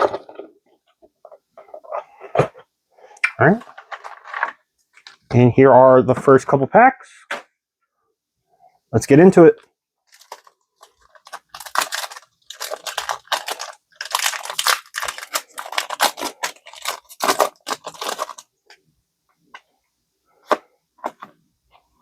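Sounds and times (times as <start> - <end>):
foil wrapper tearing and crinkling: 10.1 - 18.5.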